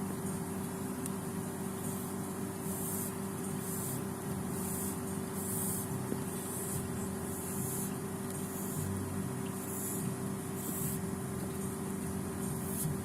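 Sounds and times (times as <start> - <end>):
steady low hum: 0.0 - 13.0
cockroaches hissing: 1.8 - 11.2, 12.4 - 13.0.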